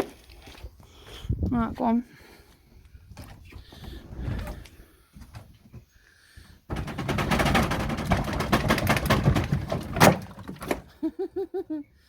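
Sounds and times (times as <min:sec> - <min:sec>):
wooden timbers cracking and splintering: 0:06.7 - 0:10.9.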